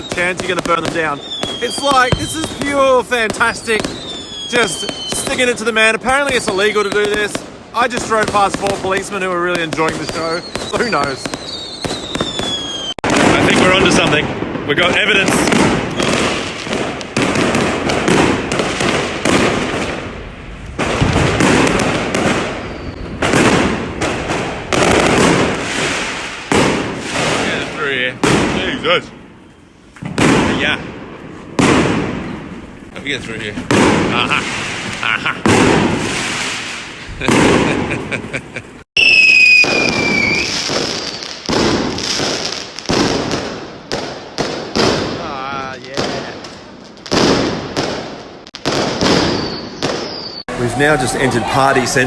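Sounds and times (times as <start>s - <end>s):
firework whistle: 0.0s - 5.6s, 6.3s - 7.2s, 9.8s - 13.8s, 15.8s - 16.6s, 20.8s - 23.8s, 39.0s - 41.4s, 48.9s - 52.0s
firecrackers crackling: 0.0s - 52.0s
loud firework bangs: 0.0s - 52.0s.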